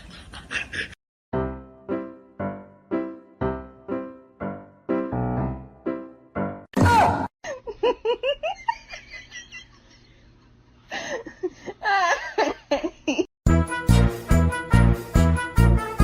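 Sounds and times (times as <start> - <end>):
person laughing: 0.0 - 1.0, 7.4 - 10.2, 10.9 - 13.3
piano music: 1.3 - 6.7, 13.5 - 16.0.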